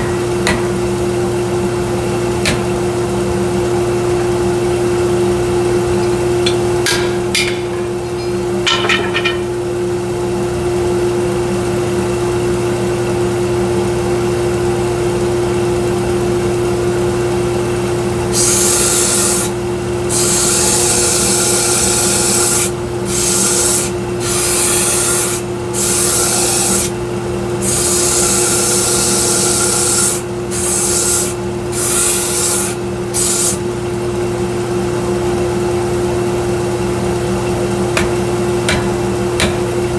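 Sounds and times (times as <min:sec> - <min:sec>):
rasping sanding of workpiece: 0:20.1 - 0:26.9.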